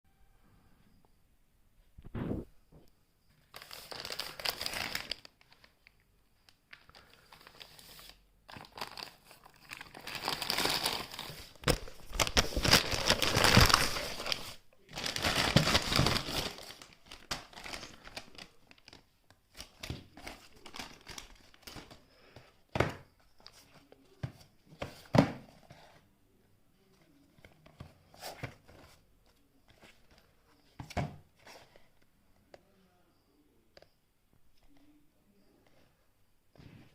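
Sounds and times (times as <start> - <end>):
packaging crinkling and tearing: 3.5 - 6.0, 6.7 - 22.0.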